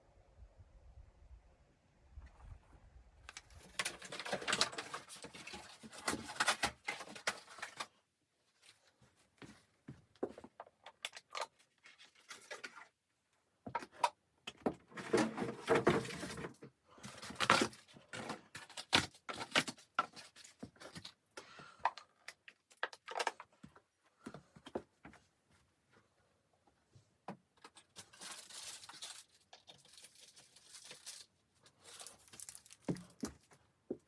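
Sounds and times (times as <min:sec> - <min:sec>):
objects being handled: 0:03.3 - 0:08.0, 0:27.3 - 0:34.0.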